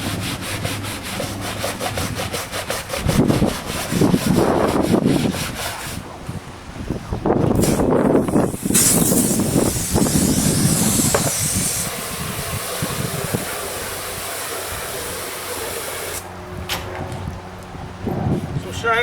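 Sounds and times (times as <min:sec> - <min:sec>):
scrubbing: 0:00.0 - 0:06.0
spray hissing: 0:07.6 - 0:16.3.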